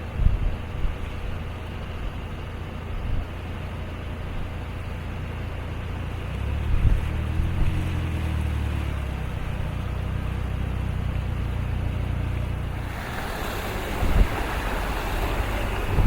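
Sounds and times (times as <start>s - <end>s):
vehicle engine humming: 0.0s - 16.0s
wind thumping on microphone: 0.1s - 1.4s, 6.7s - 7.8s, 12.7s - 16.0s
water splashing: 6.3s - 16.0s
storm wind rushing: 12.8s - 16.0s.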